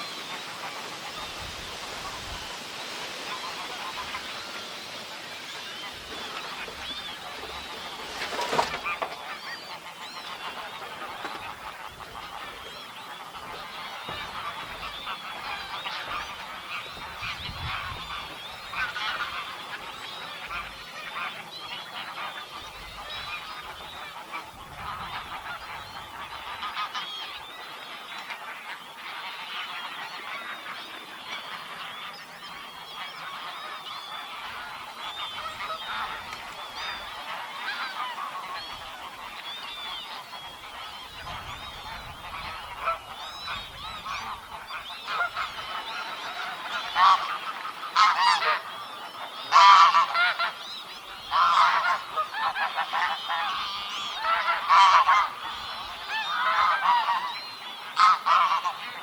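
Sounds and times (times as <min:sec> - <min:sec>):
geese honking: 0:00.0 - 0:59.0.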